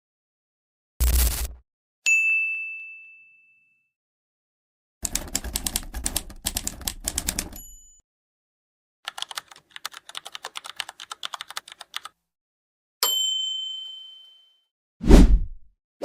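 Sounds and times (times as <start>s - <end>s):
bell ding: 2.1s - 3.9s, 13.0s - 14.7s
computer keyboard typing: 5.0s - 7.6s, 9.1s - 12.2s.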